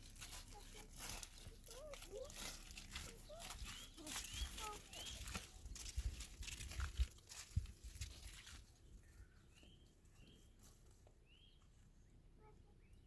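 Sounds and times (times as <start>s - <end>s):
faint bird chirps: 3.0s - 5.5s, 8.8s - 10.6s, 11.2s - 13.0s.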